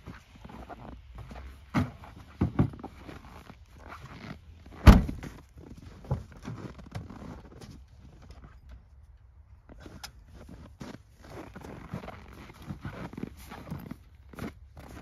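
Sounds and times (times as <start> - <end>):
knocks and thumps: 1.7 - 3.0.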